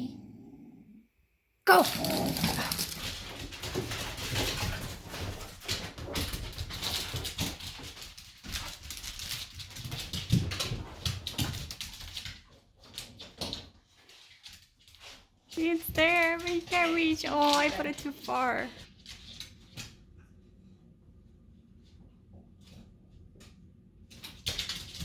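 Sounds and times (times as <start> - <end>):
dogs sniffing and snuffling: 1.8 - 12.4.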